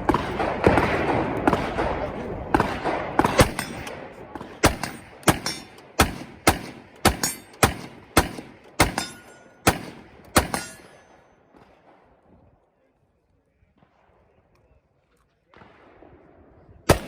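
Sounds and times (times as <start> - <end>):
gunshots with echo: 0.0 - 12.1.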